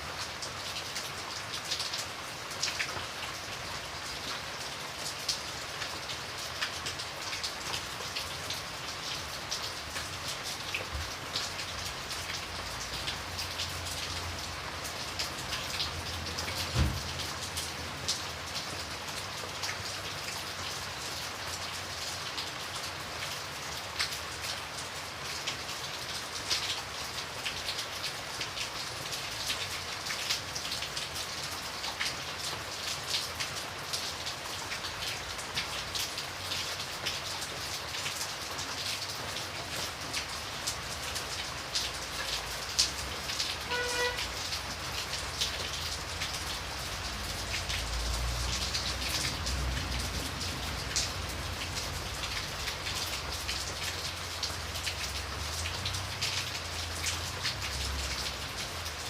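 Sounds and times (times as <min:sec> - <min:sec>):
rain on a hard surface: 0:00.0 - 0:59.0
dull thump: 0:16.7 - 0:17.0.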